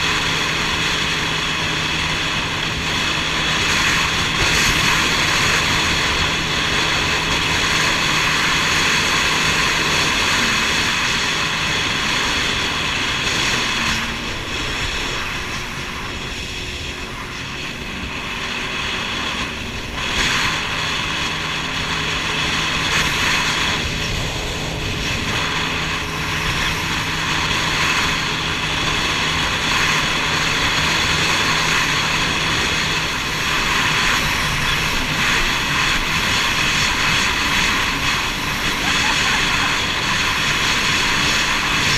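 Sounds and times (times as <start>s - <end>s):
jet ski engine running: 0.0s - 41.9s.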